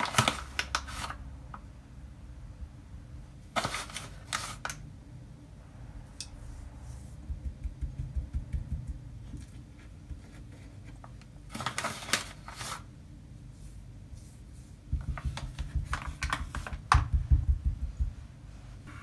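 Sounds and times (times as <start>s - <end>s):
rapid light knocking: 7.2s - 9.1s, 14.9s - 18.2s.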